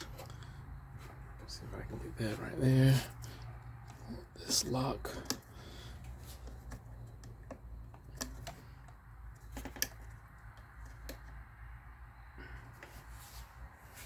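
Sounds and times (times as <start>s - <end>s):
parts clicking and tapping: 3.1s - 11.7s.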